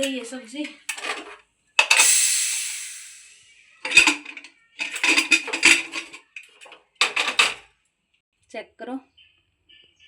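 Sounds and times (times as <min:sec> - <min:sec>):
metal spoon scraping steel pot: 0:00.9 - 0:06.2
steam hissing from pressure cooker: 0:01.8 - 0:04.3.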